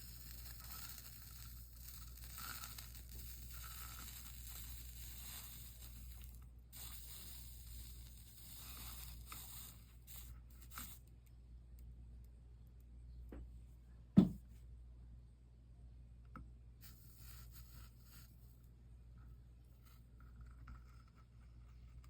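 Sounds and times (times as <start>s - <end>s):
soldering iron crackling: 0.0s - 11.2s.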